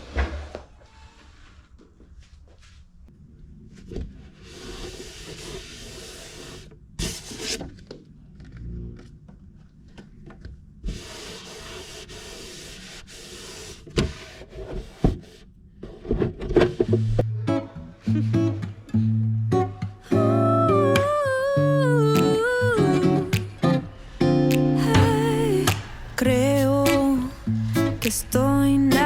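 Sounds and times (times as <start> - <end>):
rubbing noise: 10.8 - 17.2
sharp knocks: 24.9 - 26.1.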